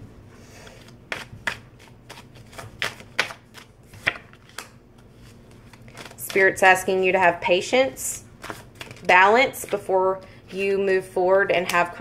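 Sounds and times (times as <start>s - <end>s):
cards snapping and tapping: 0.8s - 4.8s.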